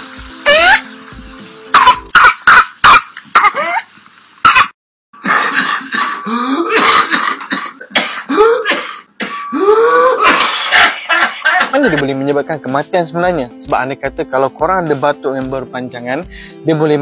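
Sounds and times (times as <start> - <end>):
quick dry coughs: 1.8 - 3.6, 4.5 - 9.5, 10.2 - 11.8.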